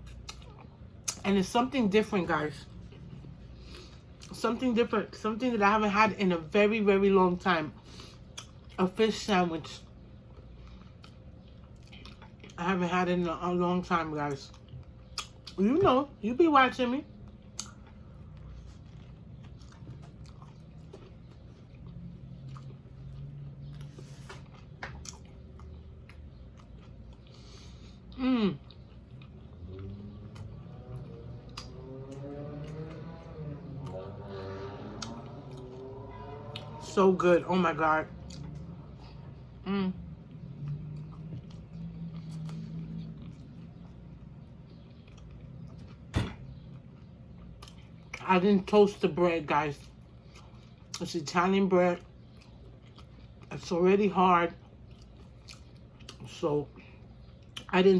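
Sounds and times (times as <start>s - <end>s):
chewing crusty sandwich: 17.2s - 36.9s, 38.2s - 48.2s, 52.0s - 53.8s, 54.5s - 57.9s.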